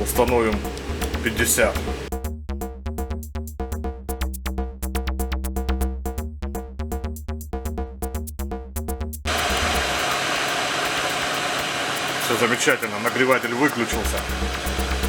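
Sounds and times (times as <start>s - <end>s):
synth notes: 0.0s - 2.1s, 9.3s - 15.0s
bass beat: 0.0s - 10.3s, 12.4s - 15.0s.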